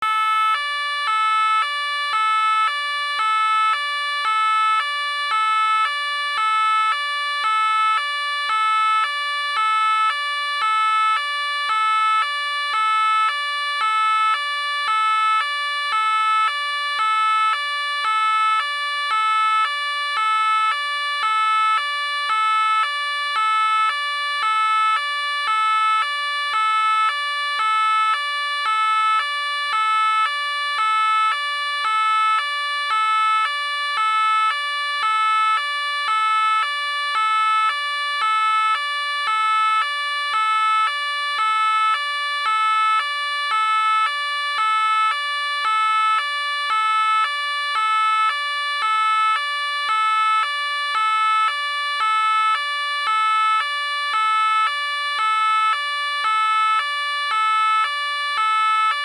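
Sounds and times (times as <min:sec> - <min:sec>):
police car two-tone siren: 0:00.0 - 0:59.0.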